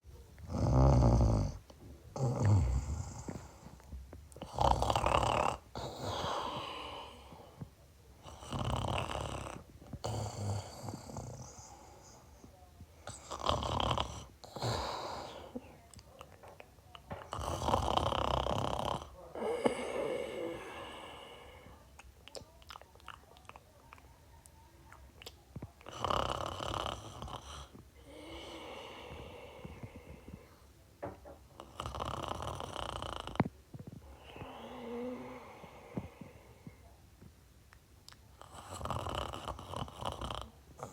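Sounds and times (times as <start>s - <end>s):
quiet breathing: 0.1s - 22.6s, 23.2s - 37.4s
loud rough snoring: 0.5s - 1.6s, 2.2s - 3.5s, 4.4s - 6.7s, 8.3s - 11.7s, 13.1s - 15.1s, 17.3s - 21.2s, 25.9s - 27.7s, 31.6s - 33.4s, 38.4s - 40.9s.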